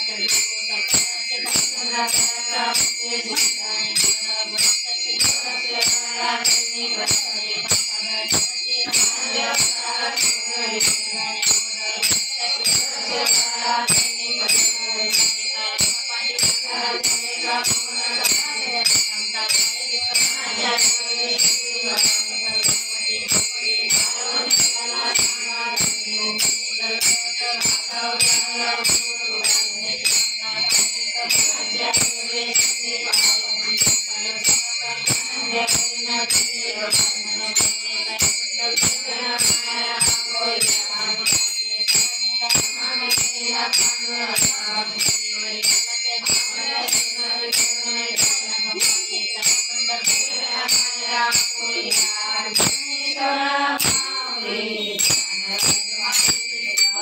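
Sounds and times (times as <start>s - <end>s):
hand cymbals clashing: 51.4s - 53.0s.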